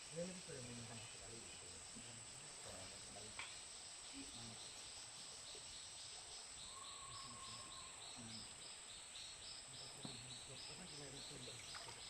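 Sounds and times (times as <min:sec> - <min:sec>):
insect high-pitched drone: 0:00.0 - 0:12.0
rhythmic insect chirp: 0:00.0 - 0:12.0
thin whistle-like tone: 0:06.6 - 0:08.4.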